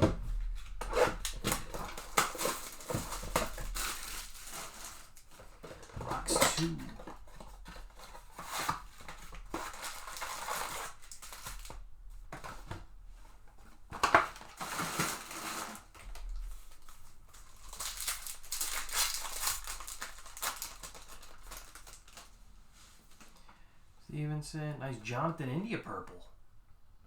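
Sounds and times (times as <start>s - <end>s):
plastic wrap crinkling and tearing: 0.6s - 11.8s, 13.9s - 22.4s.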